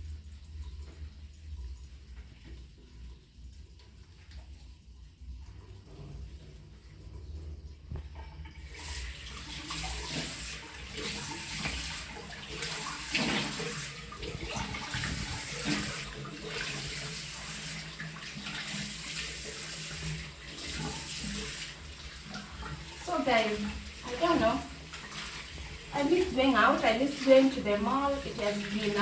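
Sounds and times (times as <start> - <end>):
tap water running into sink: 0.0 - 29.0
water splashing: 8.0 - 29.0.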